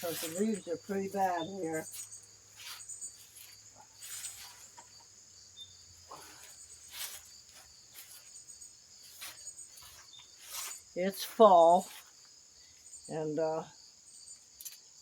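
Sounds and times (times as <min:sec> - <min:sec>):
rustling swishes: 0:00.0 - 0:04.8, 0:06.1 - 0:08.4, 0:09.0 - 0:12.1
crickets chirping: 0:00.0 - 0:15.0.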